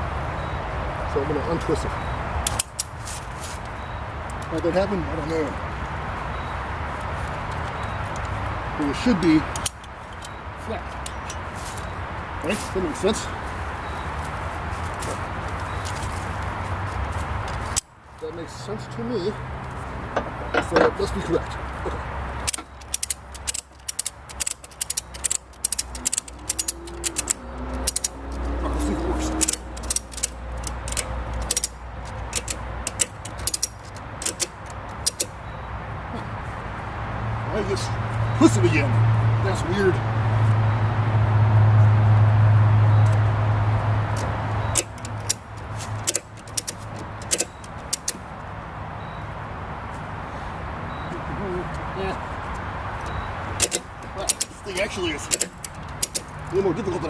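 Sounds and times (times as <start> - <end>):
ratchet strap clicking: 2.4 - 3.6, 9.5 - 11.9, 22.4 - 35.4, 44.1 - 48.3, 52.5 - 56.6.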